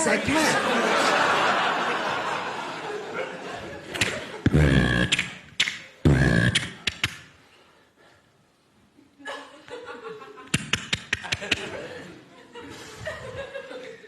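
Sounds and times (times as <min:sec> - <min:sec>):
mouth clicks: 0:03.9 - 0:07.4, 0:10.5 - 0:11.7
soft mouth sounds: 0:04.0 - 0:07.5
deep booming vocal bursts: 0:04.4 - 0:05.4, 0:06.0 - 0:06.8.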